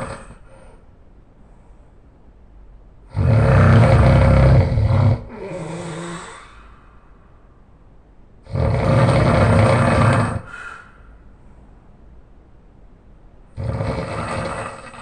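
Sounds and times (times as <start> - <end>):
person snoring loudly: 0.0 - 0.7, 3.1 - 6.5, 8.4 - 10.7, 13.6 - 15.0
breath out: 5.3 - 7.3, 10.4 - 11.7.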